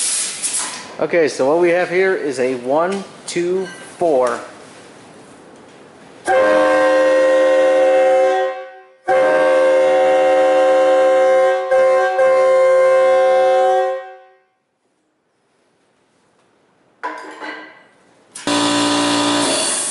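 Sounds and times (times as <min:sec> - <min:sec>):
train air horn chord: 0:06.2 - 0:14.6.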